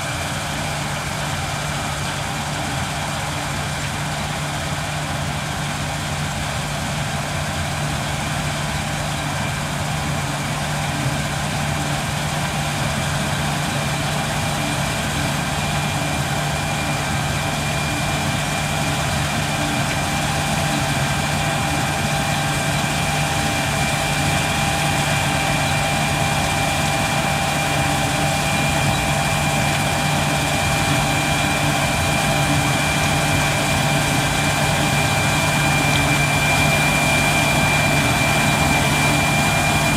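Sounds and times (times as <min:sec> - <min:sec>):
combine harvester engine running: 0:00.0 - 0:39.9
thin high whine: 0:08.8 - 0:39.9.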